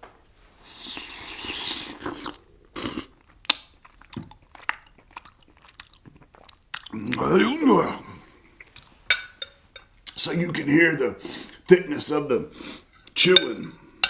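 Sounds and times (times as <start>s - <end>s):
mouth smacks and clicks: 0.8s - 7.3s
person chewing close to microphone: 0.8s - 9.0s.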